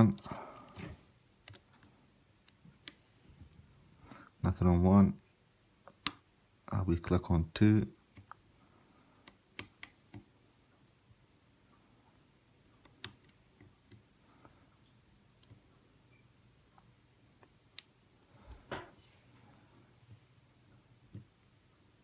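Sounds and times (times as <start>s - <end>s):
lock pick clicking: 1.4s - 1.9s.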